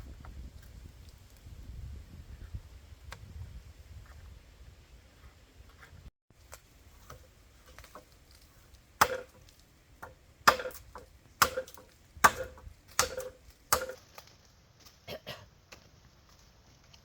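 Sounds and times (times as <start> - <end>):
axe chopping wood: 9.0 - 14.3.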